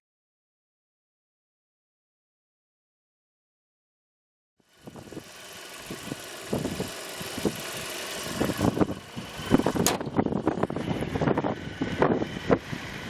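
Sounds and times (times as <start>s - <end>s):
wind buffeting microphone: 8.3s - 13.0s.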